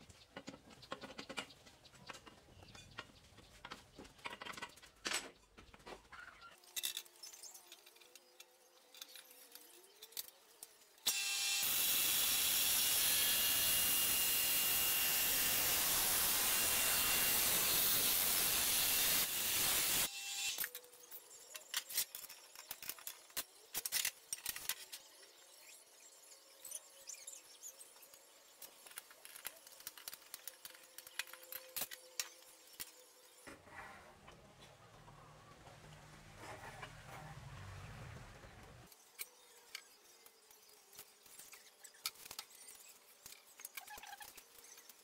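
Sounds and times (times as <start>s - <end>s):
power tool cutting metal pipe: 11.0s - 20.8s.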